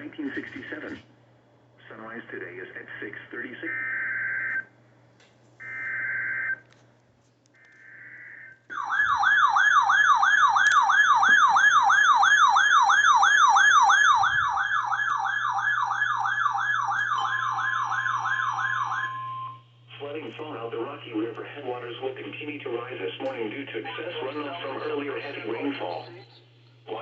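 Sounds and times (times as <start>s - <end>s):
warbling siren-like alert tone: 5.6s - 6.6s, 7.8s - 19.6s.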